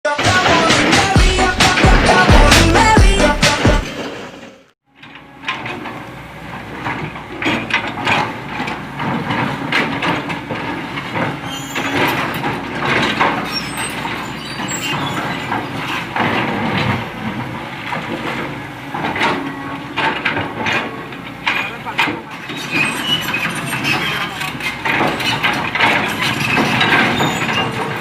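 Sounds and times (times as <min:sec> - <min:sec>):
rocks clattering into truck: 0:06.7 - 0:28.0.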